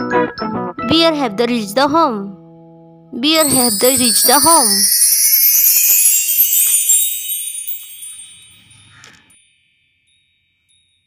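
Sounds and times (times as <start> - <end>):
high twinkling chimes: 3.4 - 11.0.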